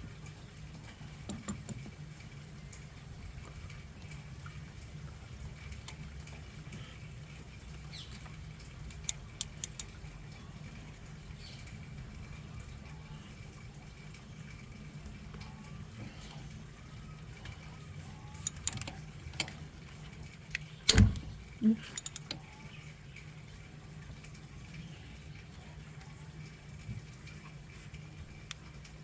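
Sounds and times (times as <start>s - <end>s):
hand tools clinking on metal: 9.1s - 9.9s, 18.4s - 18.9s, 21.8s - 22.4s
sharp clicks: 9.1s - 9.9s, 18.4s - 18.9s, 21.9s - 22.4s.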